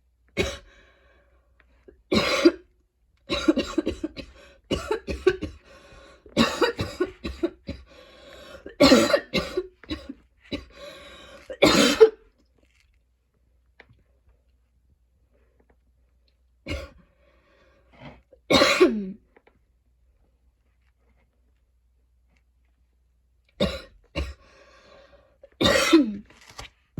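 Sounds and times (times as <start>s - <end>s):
woman coughing: 0.4s - 0.6s, 2.1s - 2.6s, 3.3s - 5.6s, 6.4s - 7.9s, 8.7s - 10.7s, 11.5s - 12.2s, 16.7s - 17.0s, 18.5s - 19.2s, 23.6s - 24.4s, 25.6s - 26.2s.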